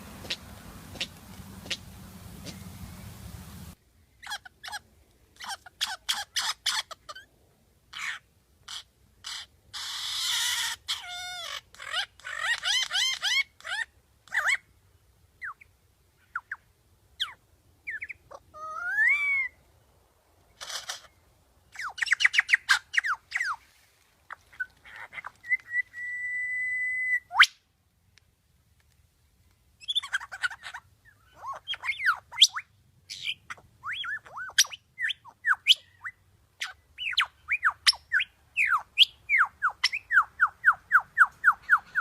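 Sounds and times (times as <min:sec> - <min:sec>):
bird singing whistled notes: 0:25.4 - 0:27.6, 0:31.1 - 0:42.0.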